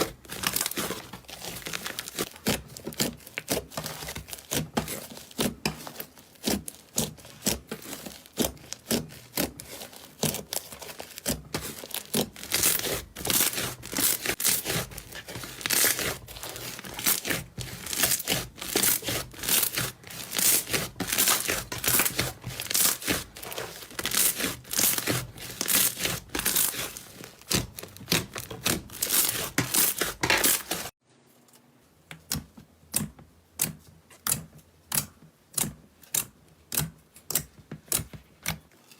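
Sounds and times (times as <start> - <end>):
slime squishing and crackling: 0.0 - 31.0.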